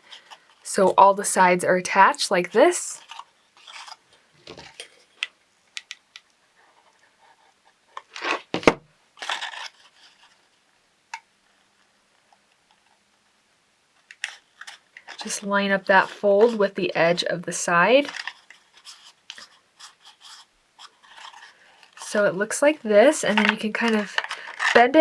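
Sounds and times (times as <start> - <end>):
cardstock crinkling: 2.6 - 5.2, 8.0 - 10.5, 14.1 - 25.0.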